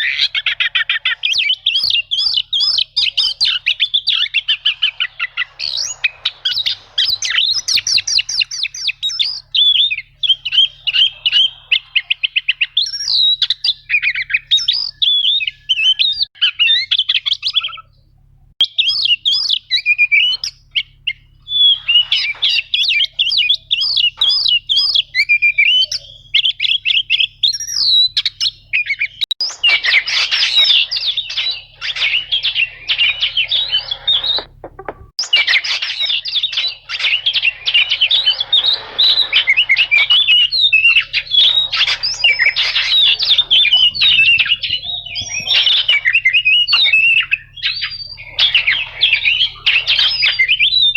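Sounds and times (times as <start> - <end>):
magpie-robin singing: 0.0 - 18.0, 18.6 - 50.9.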